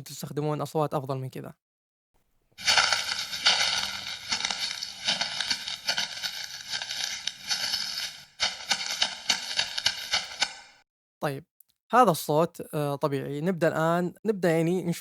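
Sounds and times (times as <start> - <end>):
sharp footsteps: 2.6 - 10.8.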